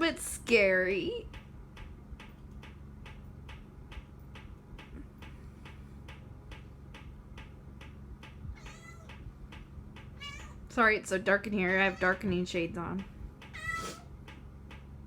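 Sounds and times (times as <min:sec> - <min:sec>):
ceiling fan ticking and humming: 0:00.0 - 0:15.0
kitten meowing: 0:08.6 - 0:09.1, 0:10.2 - 0:10.6, 0:13.6 - 0:14.1.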